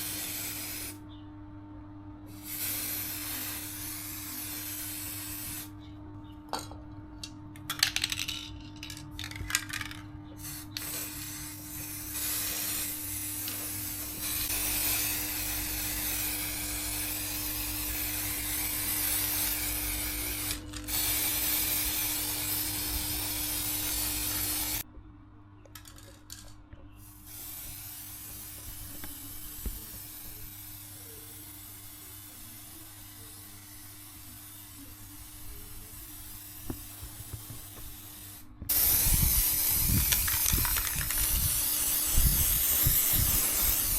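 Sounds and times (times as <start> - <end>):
spraying hiss: 0.0 - 1.0, 2.3 - 5.8, 10.4 - 24.8, 27.0 - 43.9
faint hum: 0.0 - 43.9.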